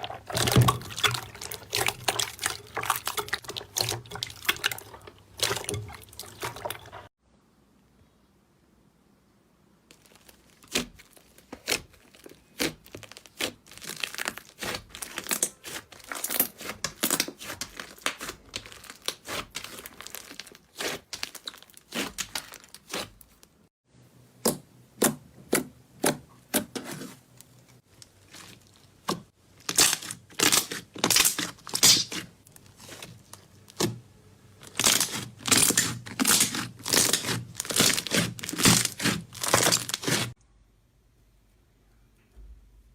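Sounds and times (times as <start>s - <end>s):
slime crackling and popping: 9.9s - 23.4s, 29.6s - 34.0s, 34.6s - 40.4s.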